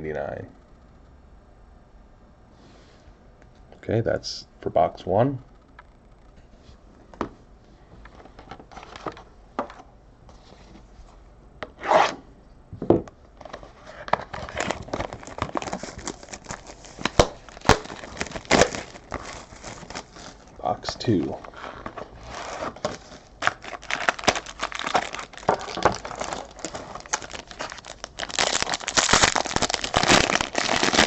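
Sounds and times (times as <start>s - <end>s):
packaging tearing and crinkling: 13.9s - 31.0s.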